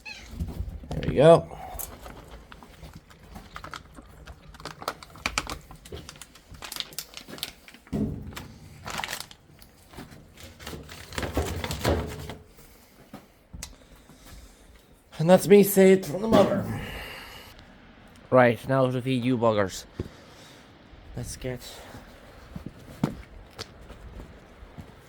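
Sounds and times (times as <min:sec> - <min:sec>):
pouch crinkling and clicks: 0:01.8 - 0:08.0, 0:08.7 - 0:11.2.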